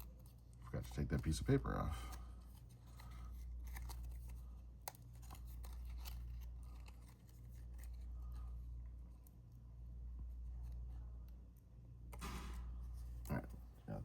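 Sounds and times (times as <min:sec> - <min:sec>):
paper rustling: 0:00.0 - 0:08.6.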